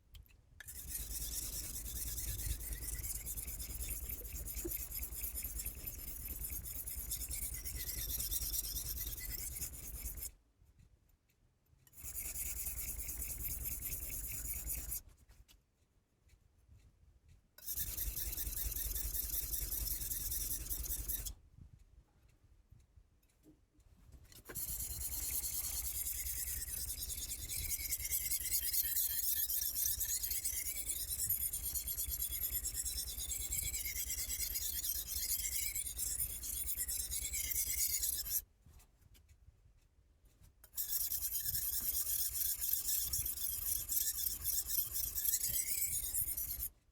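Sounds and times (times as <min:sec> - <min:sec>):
knife scraping on whetstone: 0:00.7 - 0:10.3, 0:11.9 - 0:15.0, 0:17.6 - 0:21.3, 0:24.4 - 0:38.4, 0:40.8 - 0:46.7.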